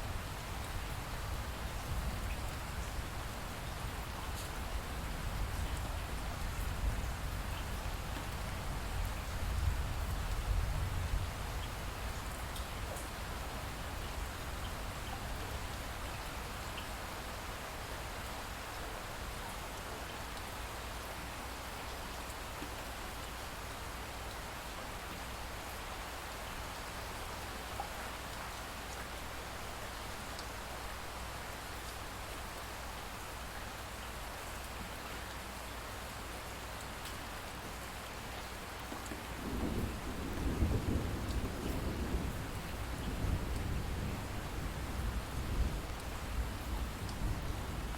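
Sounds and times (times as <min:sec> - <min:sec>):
steady rain falling: 0:00.0 - 0:47.9
thunder rumbling: 0:39.4 - 0:45.8.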